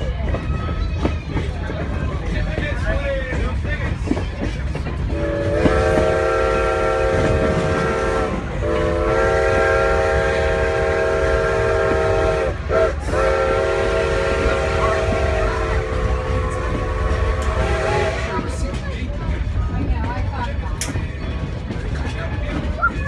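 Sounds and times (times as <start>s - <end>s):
moving train rumble: 0.0s - 23.0s
steam locomotive chime whistle: 5.1s - 18.5s.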